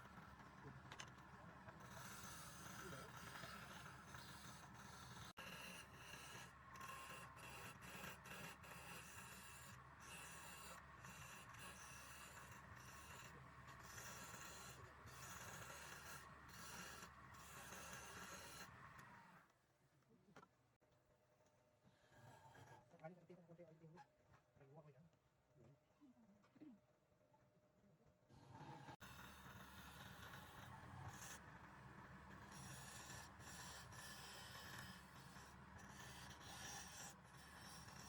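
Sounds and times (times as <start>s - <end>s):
turning tool scraping wood: 1.7s - 19.1s, 28.8s - 38.0s
wood lathe humming: 29.0s - 38.0s.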